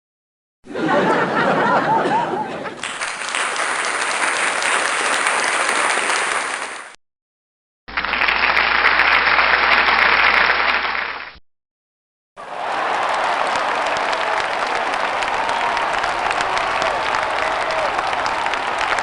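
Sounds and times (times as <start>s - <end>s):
crowd applauding: 2.8s - 7.0s, 7.9s - 11.3s, 12.4s - 19.0s.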